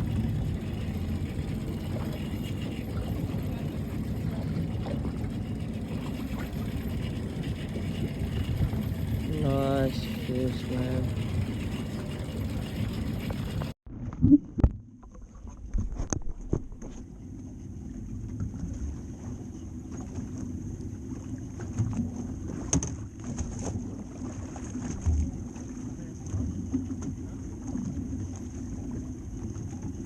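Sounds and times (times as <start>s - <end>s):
water sloshing around kayak: 0.0s - 13.8s, 14.8s - 30.0s
wind buffeting microphone: 0.0s - 13.8s.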